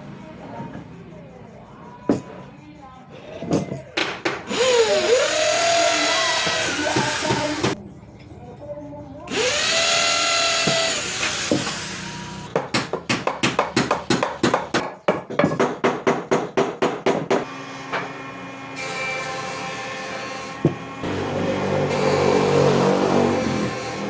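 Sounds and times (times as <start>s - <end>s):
power tool whine: 4.5s - 7.8s, 9.3s - 12.5s, 17.5s - 24.0s.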